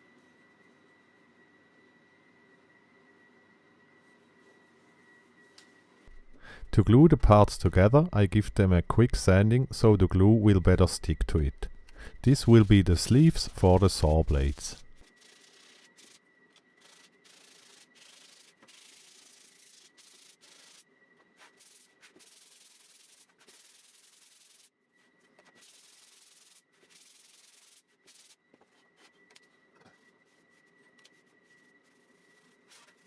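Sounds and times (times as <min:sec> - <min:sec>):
sandpaper rubbing on wood: 0:12.2 - 0:16.2, 0:16.8 - 0:20.8, 0:21.4 - 0:24.7, 0:25.6 - 0:28.4.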